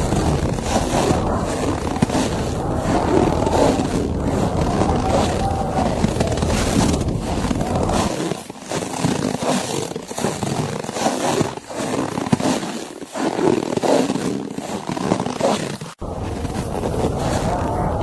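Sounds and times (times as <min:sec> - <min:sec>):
blizzard wind gusting: 0:00.0 - 0:08.2, 0:16.0 - 0:18.0
snow crunching: 0:00.0 - 0:09.5, 0:16.0 - 0:18.0.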